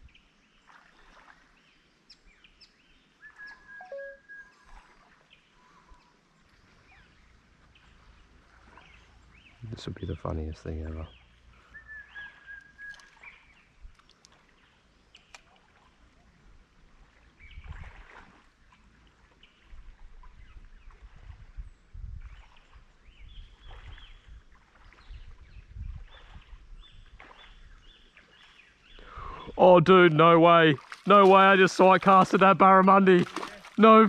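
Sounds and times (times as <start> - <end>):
birds chirping: 2.6 - 4.5, 6.7 - 13.7, 26.0 - 34.0.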